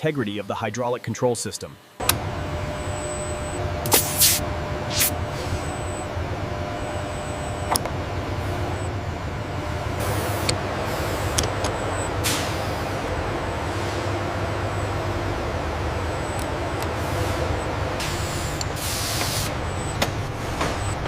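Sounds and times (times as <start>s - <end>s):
machinery humming: 0.0s - 21.0s
short hissing bursts: 3.9s - 5.2s.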